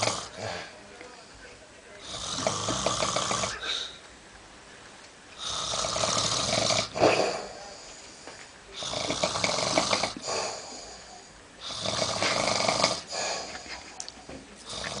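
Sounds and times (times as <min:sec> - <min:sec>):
man snoring: 0:00.0 - 0:00.6, 0:02.0 - 0:03.9, 0:05.4 - 0:07.8, 0:08.7 - 0:13.5, 0:14.7 - 0:15.0.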